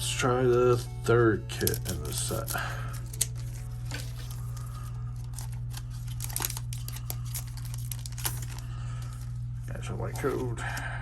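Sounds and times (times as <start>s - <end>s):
steady low hum: 0.0s - 11.0s
scissors snipping foil wrapper: 1.5s - 9.2s.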